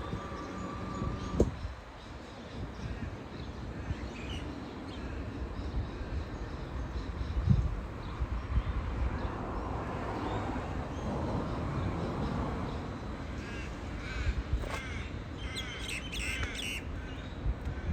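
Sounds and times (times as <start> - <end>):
birds calling: 13.6 - 17.4.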